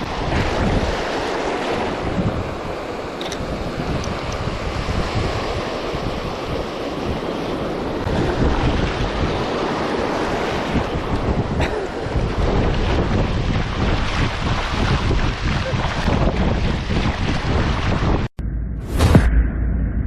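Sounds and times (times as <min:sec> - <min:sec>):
surf washing onto beach: 0:00.0 - 0:18.3
wind buffeting microphone: 0:00.0 - 0:18.3.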